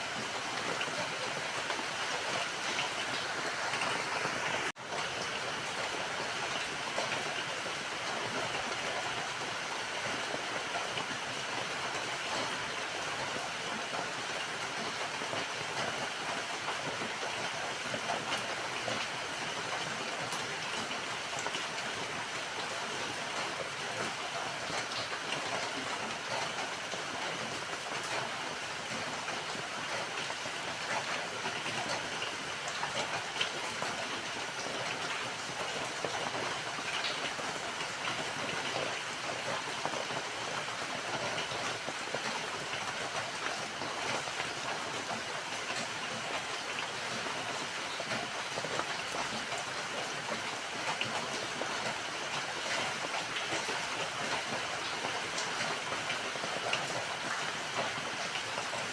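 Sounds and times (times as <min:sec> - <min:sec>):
steady rain falling: 0:00.0 - 0:58.9.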